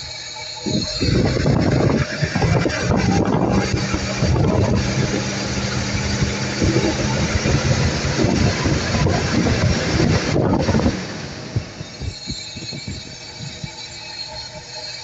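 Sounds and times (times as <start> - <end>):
car engine idling roughly: 0.7 - 12.1.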